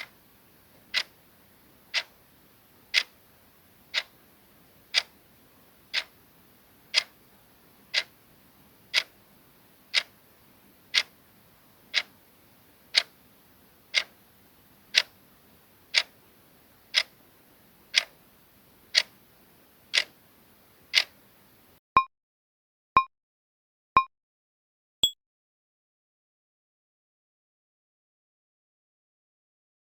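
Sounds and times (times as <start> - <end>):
clock ticking: 0.9 - 1.1, 1.9 - 2.1, 2.9 - 3.1, 3.9 - 4.1, 4.9 - 5.1, 5.9 - 6.1, 6.9 - 7.1, 7.9 - 8.1, 8.9 - 9.1, 9.9 - 10.1, 10.9 - 11.1, 11.9 - 12.1, 13.9 - 14.1, 14.9 - 15.1, 15.9 - 16.1, 16.9 - 17.1, 17.9 - 18.1, 18.9 - 19.1, 19.9 - 20.1, 20.9 - 21.1.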